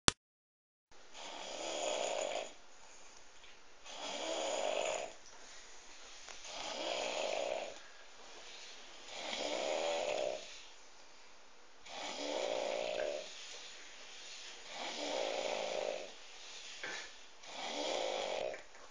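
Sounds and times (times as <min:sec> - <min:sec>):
person snoring heavily: 0:01.2 - 0:02.6, 0:03.9 - 0:05.1, 0:06.5 - 0:07.8, 0:09.1 - 0:10.5, 0:11.8 - 0:13.3, 0:14.7 - 0:16.2, 0:17.4 - 0:18.6
quiet breathing: 0:05.0 - 0:18.9.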